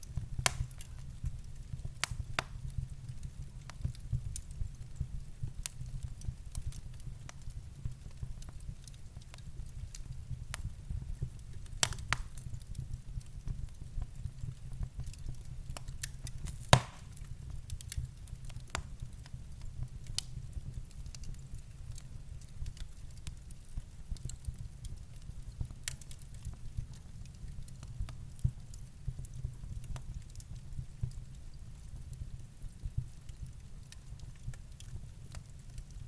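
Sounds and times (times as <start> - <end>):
fire crackles and pops: 0.0 - 36.0
low fire rumble: 0.0 - 36.0
sharp loud pop: 16.7 - 17.1.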